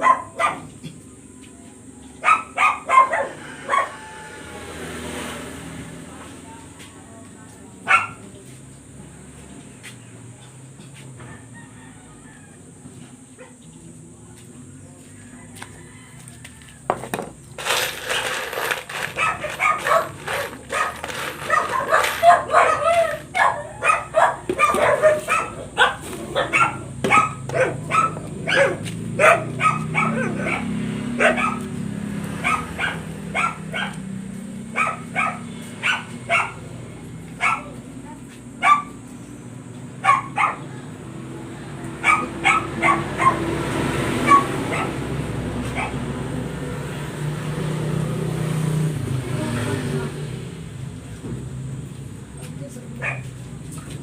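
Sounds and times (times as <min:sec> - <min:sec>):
dog barking: 0:00.0 - 0:00.8, 0:02.2 - 0:04.2, 0:07.8 - 0:08.3, 0:19.2 - 0:34.1, 0:34.7 - 0:36.7, 0:37.4 - 0:39.0, 0:40.0 - 0:40.9, 0:42.0 - 0:45.0, 0:45.6 - 0:46.1, 0:53.0 - 0:53.3.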